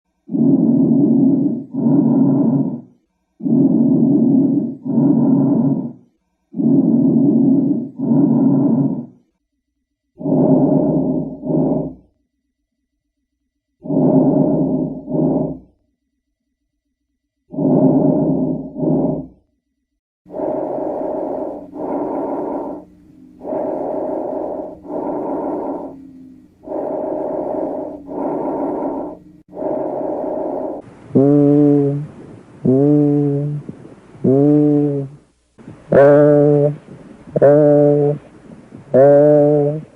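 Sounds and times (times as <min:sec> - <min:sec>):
breathing through stethoscope: 0:00.3 - 0:06.0, 0:06.6 - 0:09.1, 0:10.2 - 0:12.0, 0:20.3 - 0:32.8.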